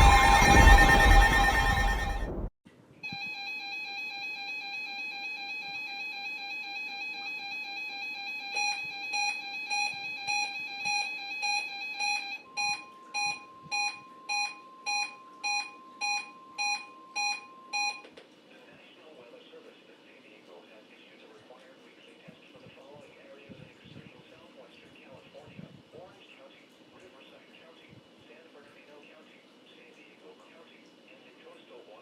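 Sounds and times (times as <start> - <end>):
higher pure steady tone: 0.0 - 2.5, 12.1 - 18.0
repeating alarm beep: 0.0 - 2.5, 3.1 - 18.0
steady electronic alarm tone: 0.0 - 2.5, 3.1 - 18.0.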